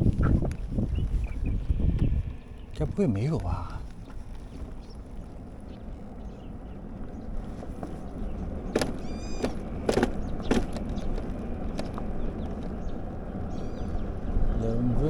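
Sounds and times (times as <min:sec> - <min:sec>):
road rumble: 0:00.0 - 0:15.0
wind: 0:00.0 - 0:15.0
sharp knocks: 0:08.8 - 0:12.0.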